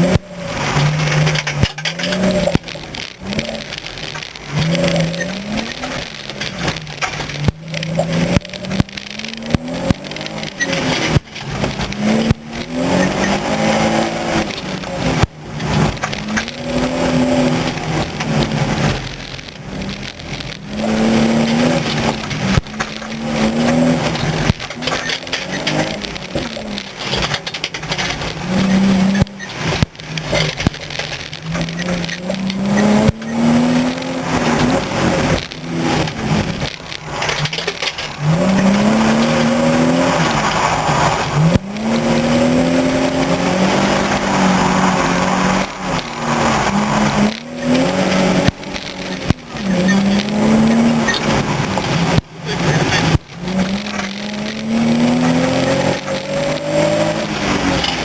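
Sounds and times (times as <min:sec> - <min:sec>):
gear shift click: 0:00.0 - 0:40.7
car engine revving: 0:00.0 - 0:58.0.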